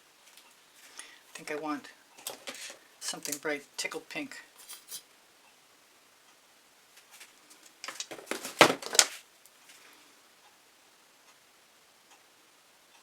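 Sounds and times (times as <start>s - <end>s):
painting supplies clicking and scraping: 1.6s - 3.5s, 4.6s - 5.1s, 7.2s - 9.2s.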